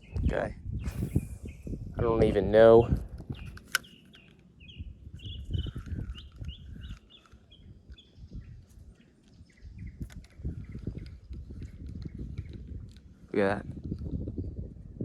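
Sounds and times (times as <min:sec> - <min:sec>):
bird chirping: 0:00.0 - 0:01.9, 0:02.6 - 0:12.7.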